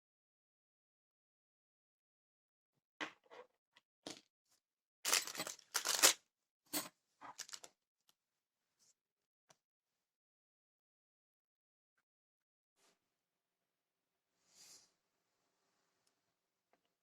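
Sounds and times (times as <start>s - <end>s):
packaging rustling: 5.1s - 6.2s, 7.4s - 7.7s.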